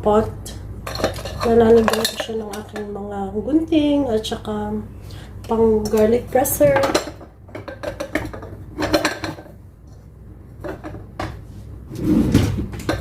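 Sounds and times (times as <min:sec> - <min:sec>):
metal utensils clattering into pot: 0:00.8 - 0:02.9, 0:06.6 - 0:09.5.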